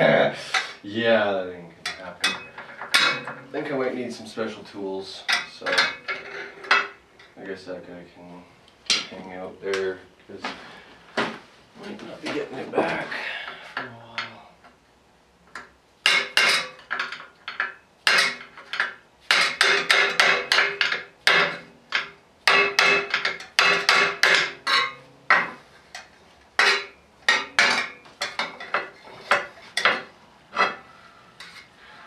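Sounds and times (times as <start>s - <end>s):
hammer striking metal: 1.8s - 3.6s.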